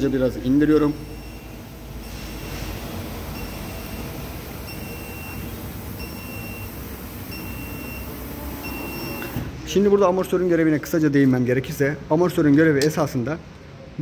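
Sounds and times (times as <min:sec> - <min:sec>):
high-pitched warning beeps: 0:00.0 - 0:09.4
vehicle lift hiss and hum: 0:00.0 - 0:09.9.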